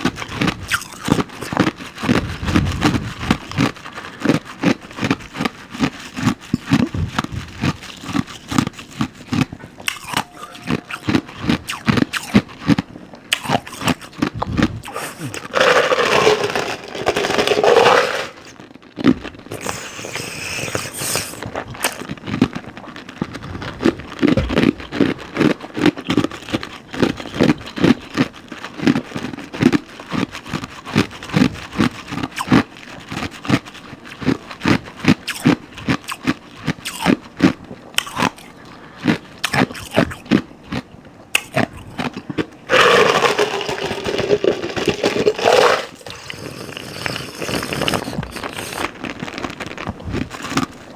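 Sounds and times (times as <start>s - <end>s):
close chewing crunches: 0.0s - 17.4s, 18.4s - 50.9s.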